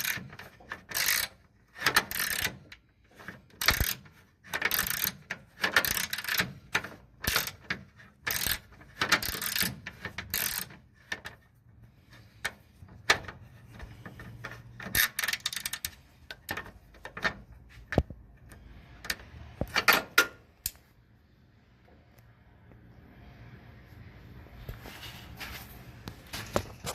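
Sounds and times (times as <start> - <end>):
ratchet clicking: 0.0 - 11.4, 12.4 - 20.0.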